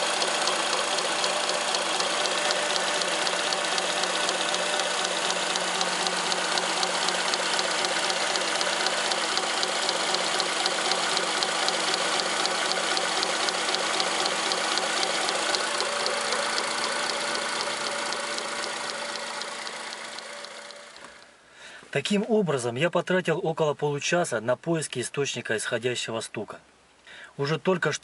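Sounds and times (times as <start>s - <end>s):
fast even knocking belt: 0.0s - 20.8s
car engine idling: 0.0s - 21.2s.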